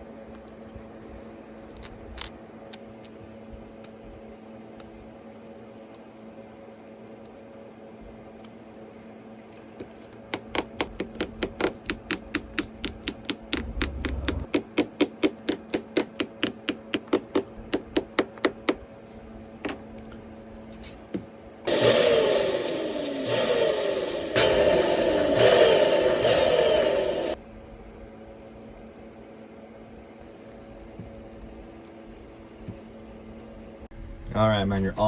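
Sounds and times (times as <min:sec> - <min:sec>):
steady low hum: 0:18.8 - 0:29.2.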